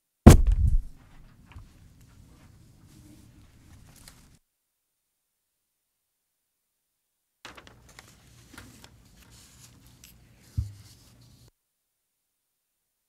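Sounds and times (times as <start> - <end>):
microphone handling clicks: 0.3 - 1.0
thump: 0.3 - 1.0, 10.6 - 10.8
low electrical hum: 0.3 - 4.4.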